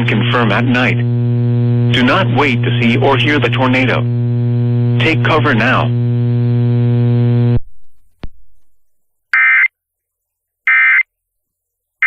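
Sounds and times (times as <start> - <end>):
electrical hum: 0.0 - 7.7.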